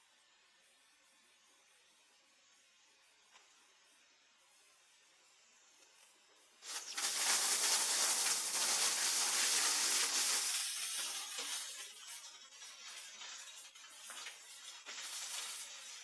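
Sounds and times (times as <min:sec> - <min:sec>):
wood chipper shredding wood: 0:06.6 - 0:16.0.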